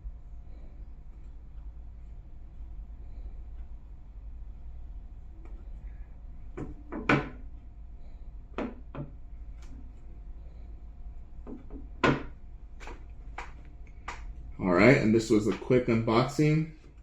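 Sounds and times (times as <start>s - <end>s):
steady low hum: 0.0s - 17.0s
taps and clicks on smartphones: 11.4s - 14.3s.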